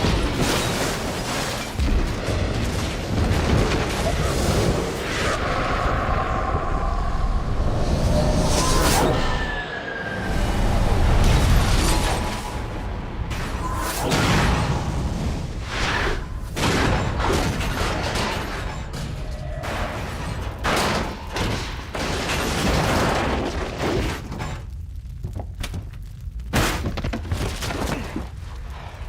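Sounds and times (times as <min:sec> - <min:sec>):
rushing rumble of wind and debris: 0:00.0 - 0:29.0
crashes and thuds: 0:11.1 - 0:28.4.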